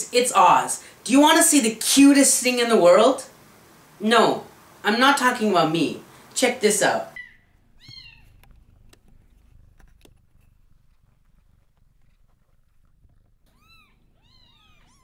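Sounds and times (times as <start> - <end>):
kitten mewing: 13.1 - 15.0.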